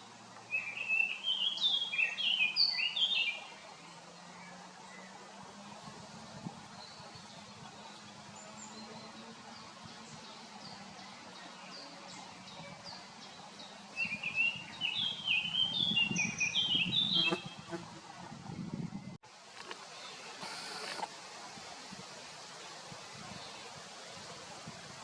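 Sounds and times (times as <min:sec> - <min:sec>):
songbirds singing: 0:00.1 - 0:17.8.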